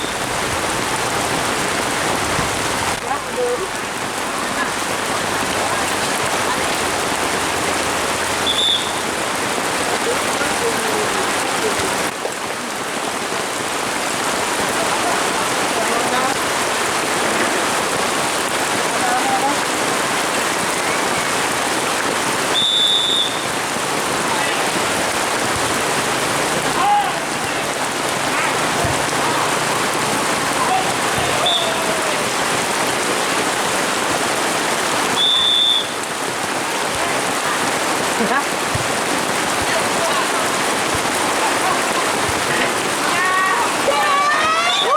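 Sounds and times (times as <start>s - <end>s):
heavy rain falling: 0.0s - 44.9s
high whistle blasts: 8.4s - 9.0s, 22.5s - 23.5s, 35.2s - 36.0s.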